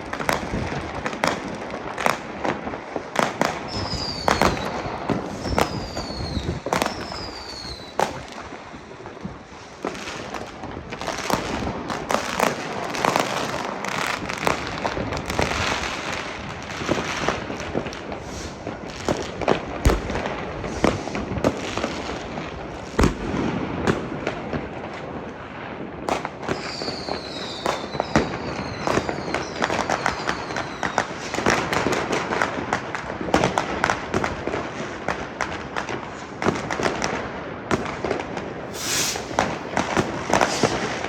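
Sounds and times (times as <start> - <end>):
fireworks and firecrackers banging: 0.0 - 41.0
falling firework whistles: 3.4 - 8.3, 18.1 - 19.1, 19.9 - 21.3, 26.5 - 31.3, 38.7 - 41.0
loud hiss: 18.2 - 18.7, 38.7 - 41.0.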